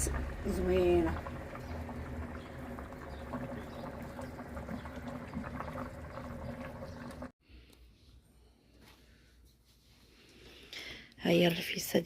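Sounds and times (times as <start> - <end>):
hot broth bubbling: 0.0 - 7.3.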